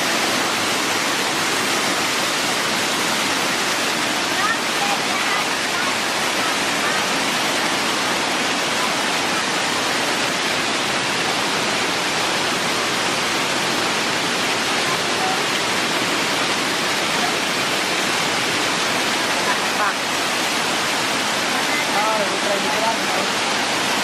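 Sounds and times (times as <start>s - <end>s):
waterfall rushing: 0.0s - 24.0s.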